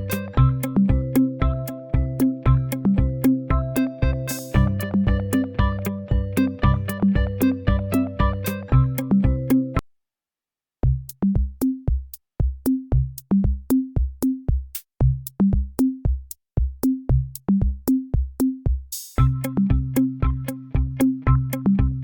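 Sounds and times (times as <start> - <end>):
drum-machine beat: 0.0 - 9.8, 10.8 - 22.0.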